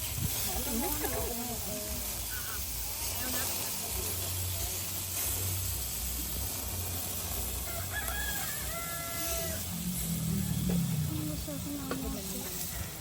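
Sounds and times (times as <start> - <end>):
steady hiss: 0.0 - 13.0
rooster crowing: 7.6 - 11.0.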